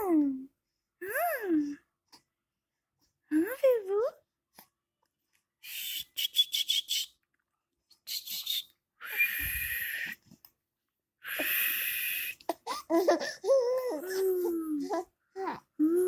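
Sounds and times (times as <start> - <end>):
breathy hisses: 11.2 - 12.4.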